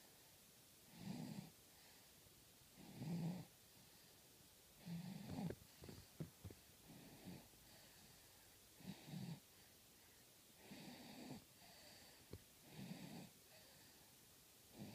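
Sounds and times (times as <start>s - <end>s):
baby snoring faintly: 2.8s - 4.2s, 4.8s - 14.1s.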